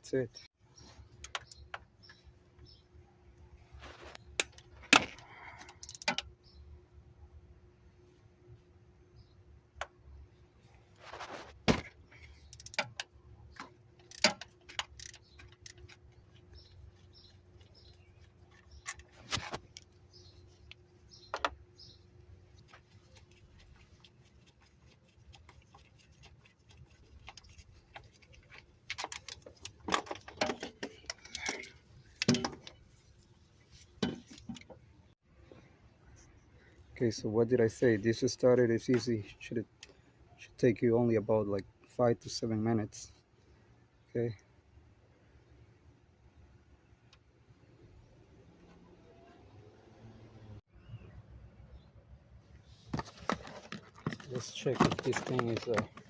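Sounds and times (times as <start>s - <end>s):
metal tools clinking and knocking: 14.0s - 16.0s, 28.9s - 32.8s, 34.0s - 34.7s.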